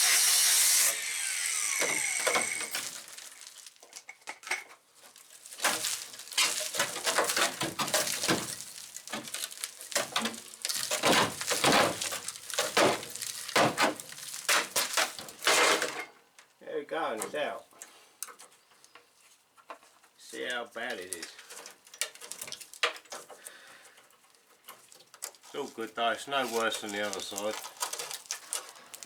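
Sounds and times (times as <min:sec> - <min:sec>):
power cutting tool winding down: 0:00.0 - 0:02.8.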